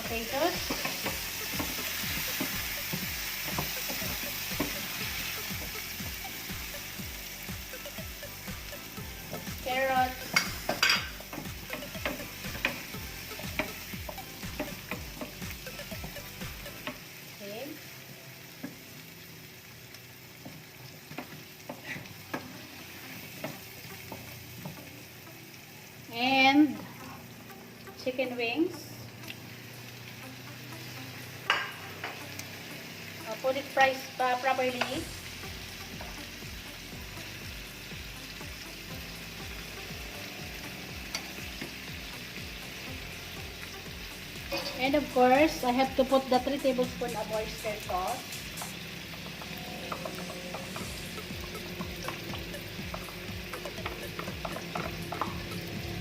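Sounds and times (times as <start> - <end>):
vegetables sizzling in oil: 0.0 - 56.0
utensil clicking against pan: 52.0 - 55.7.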